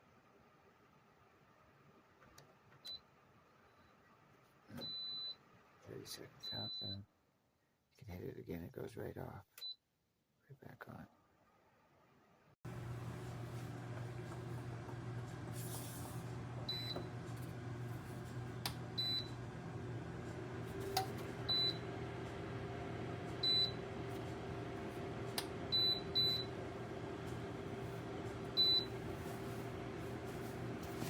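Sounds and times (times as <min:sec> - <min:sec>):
heater fan humming: 0:12.7 - 0:31.0.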